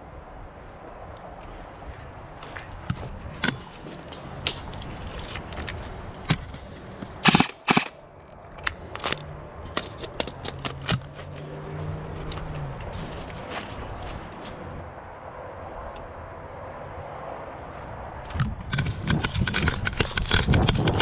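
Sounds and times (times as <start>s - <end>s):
airsoft gun shots: 7.2s - 8.0s.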